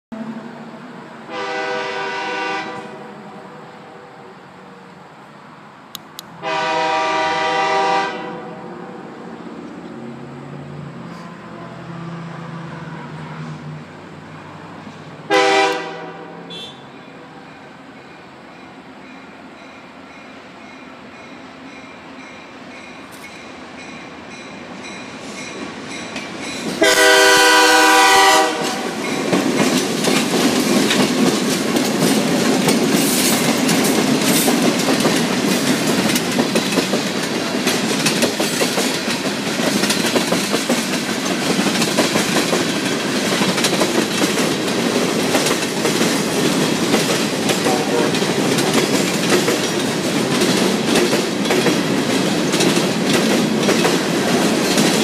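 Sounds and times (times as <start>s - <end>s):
diesel locomotive passing: 0.1s - 55.0s
train air horn blast: 1.3s - 4.8s, 6.4s - 9.1s, 15.3s - 17.1s, 26.8s - 29.0s, 47.6s - 48.3s
train wheels clicking on rail joints: 17.5s - 55.0s.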